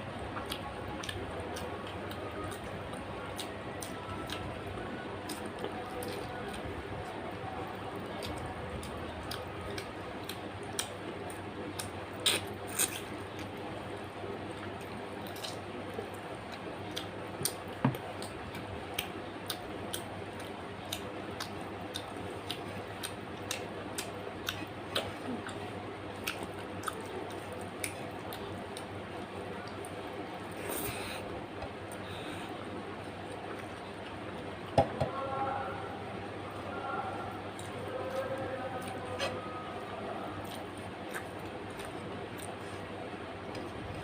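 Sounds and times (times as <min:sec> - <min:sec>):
low background hum: 0:00.0 - 0:44.0
wet chewing and lip smacks: 0:26.2 - 0:28.9.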